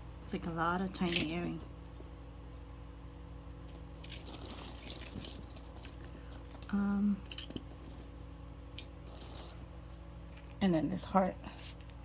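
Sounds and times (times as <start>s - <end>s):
metal jewelry clinking: 0.4s - 2.8s, 3.5s - 9.8s.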